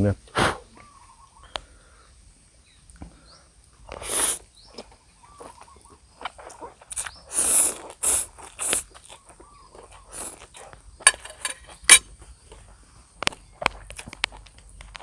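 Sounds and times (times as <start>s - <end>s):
noodles slurped: 6.4s - 9.2s.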